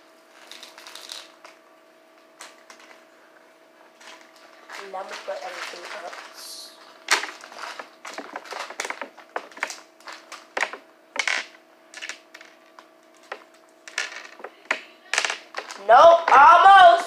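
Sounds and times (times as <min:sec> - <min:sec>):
plastic containers clicking and clattering: 0:07.1 - 0:12.6, 0:13.2 - 0:16.4.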